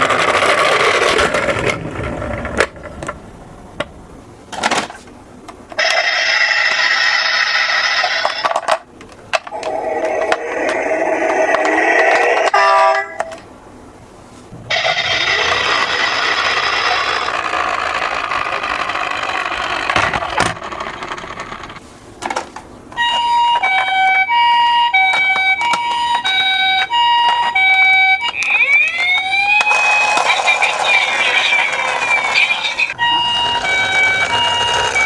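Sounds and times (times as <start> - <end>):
noisy toy whirring: 0.0 - 2.7, 5.8 - 8.8, 9.4 - 13.4, 14.7 - 21.8, 23.0 - 35.0
toy electronic two-tone siren: 5.8 - 8.5, 14.7 - 18.1, 23.0 - 35.0.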